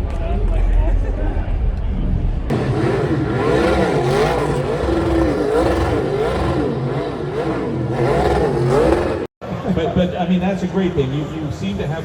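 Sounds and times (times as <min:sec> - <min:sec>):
constant low drone: 0:02.2 - 0:09.3
car engine revving: 0:02.5 - 0:09.4.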